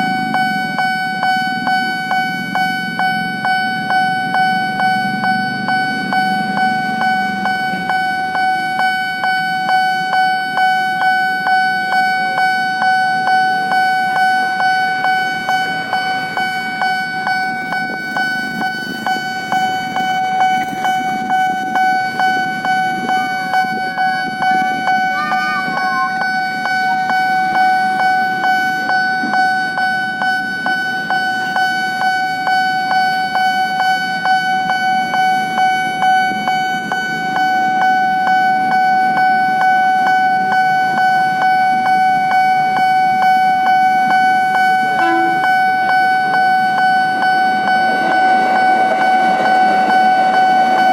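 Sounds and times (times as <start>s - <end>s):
level crossing warning bell: 0.0s - 50.9s
low traffic rumble: 0.0s - 50.9s.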